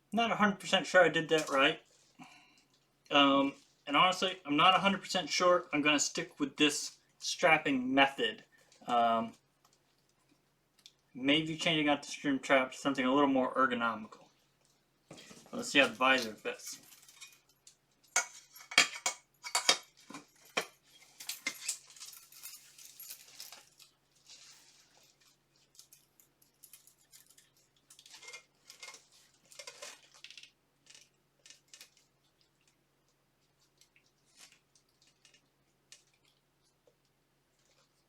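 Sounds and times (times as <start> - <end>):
metal helmet clinking and clicking: 15.2 - 24.3, 25.0 - 32.0.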